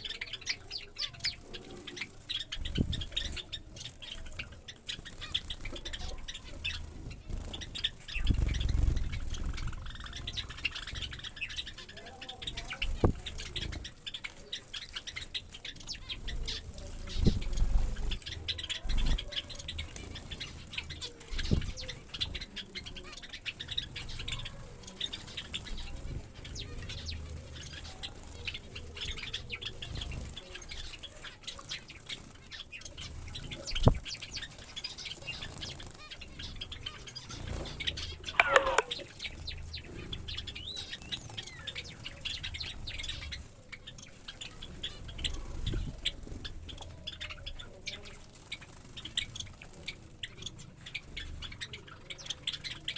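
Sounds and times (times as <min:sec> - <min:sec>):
birds fluttering and splashing: 0:00.0 - 0:52.9
high bird chirps: 0:36.2 - 0:43.4
falling bird call: 0:38.2 - 0:39.2.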